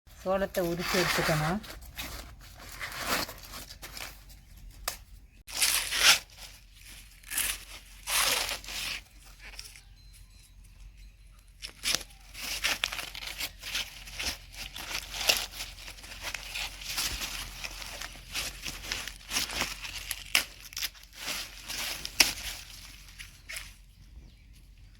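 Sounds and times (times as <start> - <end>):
corn husks ripping: 4.8 - 9.8, 11.6 - 23.8.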